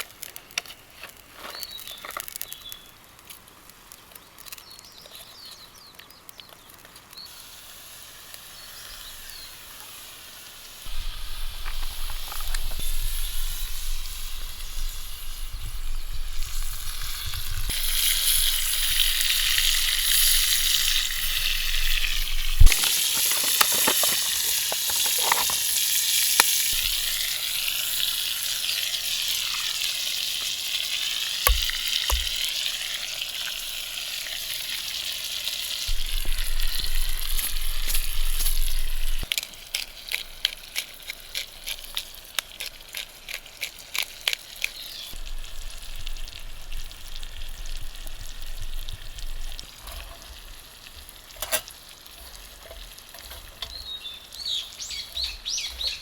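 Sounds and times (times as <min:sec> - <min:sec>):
pops and crackles: 0:00.0 - 0:07.3, 0:10.9 - 0:27.2, 0:35.9 - 0:49.6
food sizzling in a pan: 0:07.2 - 0:39.3, 0:44.8 - 0:55.6
bird chirping: 0:53.6 - 0:56.0.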